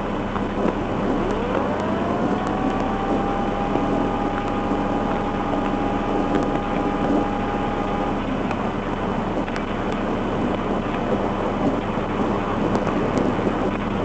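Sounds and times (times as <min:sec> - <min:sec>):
motor vehicle running: 0:00.0 - 0:14.0
steady tone: 0:00.7 - 0:08.8.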